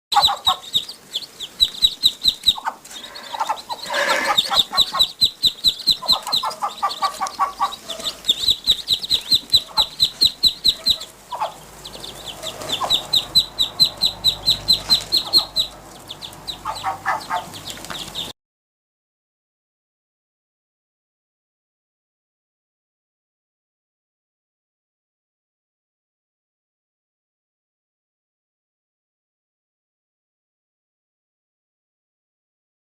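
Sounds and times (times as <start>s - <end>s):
ducklings peeping: 0.1s - 18.3s.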